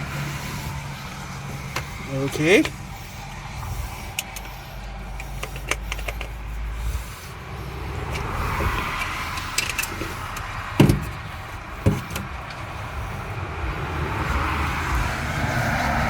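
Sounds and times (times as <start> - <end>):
spring clips clicking: 1.5 - 6.8, 8.1 - 12.7.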